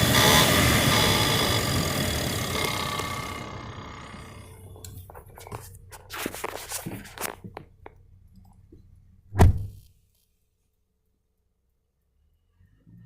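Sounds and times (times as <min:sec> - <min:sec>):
heavy thump: 0:09.3 - 0:09.8.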